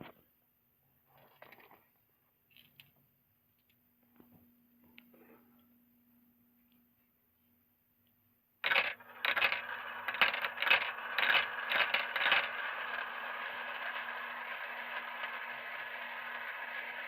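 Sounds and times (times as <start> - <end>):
marbles clattering down a run: 8.6 - 17.0.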